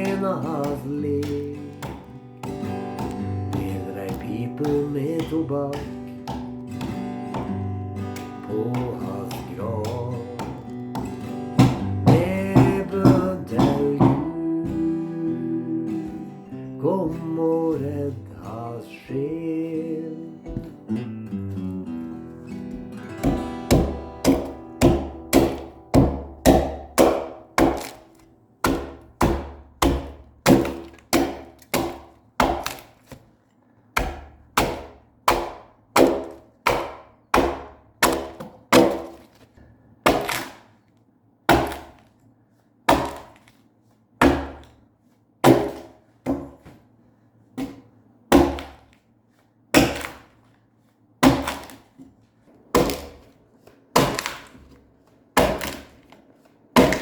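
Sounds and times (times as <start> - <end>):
axe chopping log: 0.0 - 15.0, 22.7 - 33.3, 34.0 - 39.4, 40.0 - 40.7, 41.5 - 42.1, 42.9 - 43.5, 44.2 - 44.8, 45.4 - 46.8, 47.6 - 48.9, 49.8 - 50.3, 51.2 - 51.9, 52.7 - 54.8, 55.4 - 57.0.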